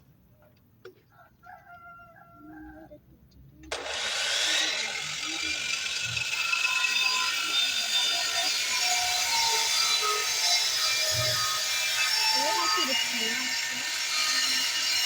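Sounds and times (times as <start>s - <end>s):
power tool milling wood: 3.7s - 15.0s.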